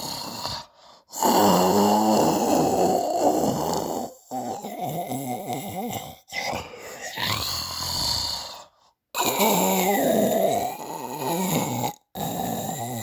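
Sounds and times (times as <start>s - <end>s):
snoring: 0.0s - 13.0s.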